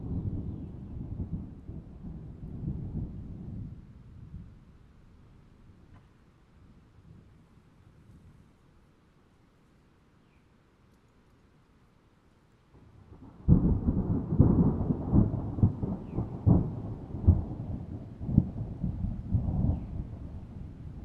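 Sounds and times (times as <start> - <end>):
deep rolling thunder rumble: 0.0 - 4.6, 12.8 - 21.0
sharp thunder cracks: 13.2 - 21.0.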